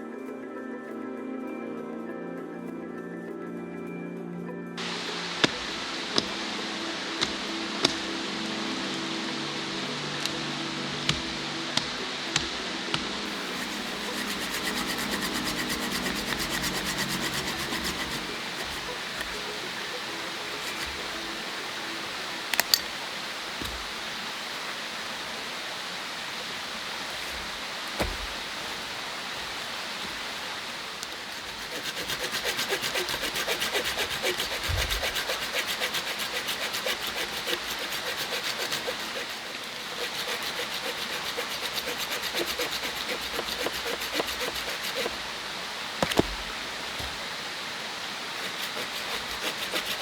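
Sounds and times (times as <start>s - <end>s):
stream rushing: 4.8s - 50.0s
hand saw cutting wood: 13.3s - 21.5s, 27.2s - 28.4s, 31.2s - 45.2s, 46.0s - 47.2s, 48.4s - 50.0s
wood knocks: 27.3s - 28.4s, 46.0s - 47.2s.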